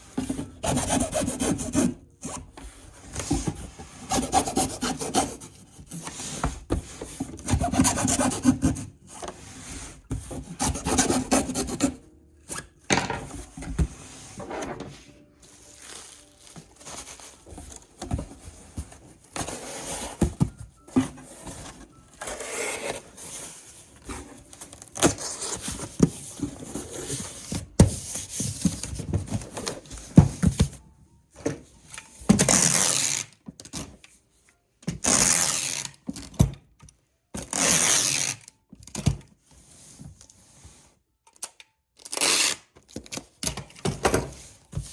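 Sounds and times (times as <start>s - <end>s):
cardboard rubbing and scraping: 3.1s - 12.1s.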